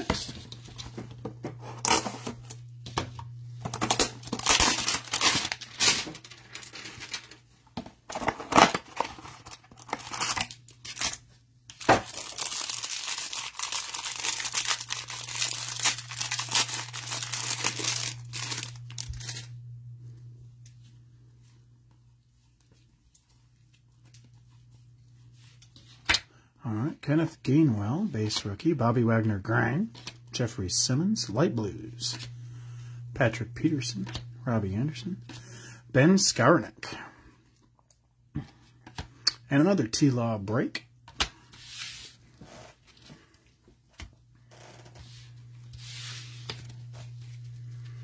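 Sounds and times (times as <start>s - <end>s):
low steady hum: 0.0s - 48.0s
cardboard box tearing and crinkling: 3.9s - 6.2s, 12.0s - 19.4s.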